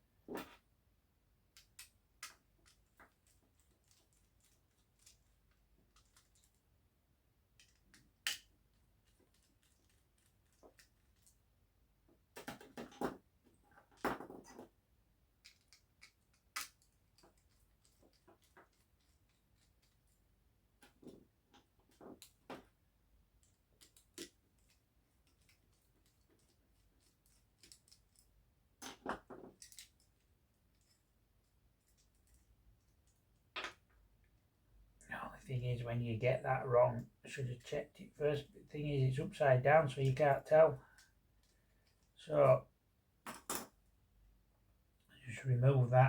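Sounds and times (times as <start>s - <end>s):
small plastic parts clicking: 1.5s - 6.6s, 7.5s - 11.4s, 12.3s - 13.2s, 15.4s - 20.2s, 23.4s - 33.9s
plastic parts clicking: 15.4s - 20.0s, 23.4s - 31.0s.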